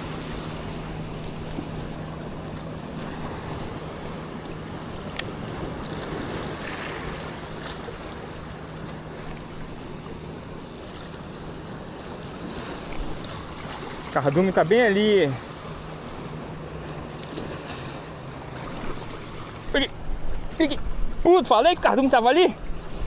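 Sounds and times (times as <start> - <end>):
moving water: 0.0 - 23.0
wind on microphone: 18.5 - 23.0.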